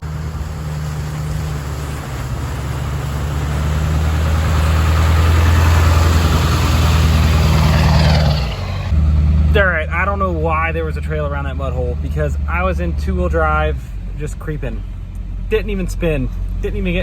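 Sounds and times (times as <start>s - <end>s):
truck engine at low revs: 0.0s - 17.0s.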